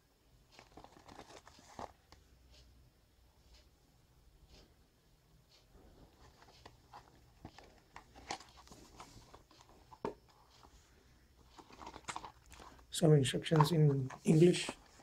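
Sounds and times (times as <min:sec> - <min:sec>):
packaging clicks and rustles: 0:00.6 - 0:02.2, 0:06.0 - 0:15.0.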